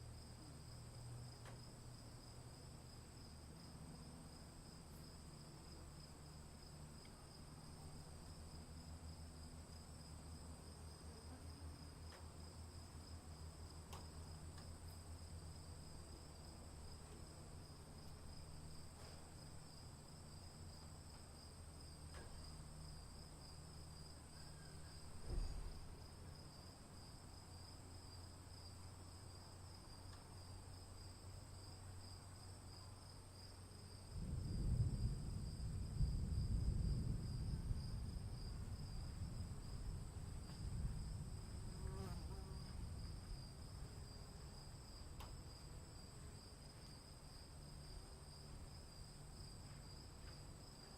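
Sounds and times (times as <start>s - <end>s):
insects trilling: 19.4s - 29.5s
low thud: 25.2s - 25.9s
distant thunder rumble: 34.1s - 41.8s.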